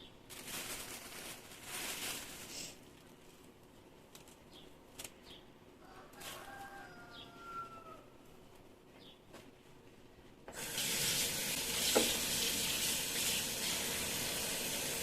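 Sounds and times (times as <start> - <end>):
plastic packaging rustling: 0.3 - 5.1.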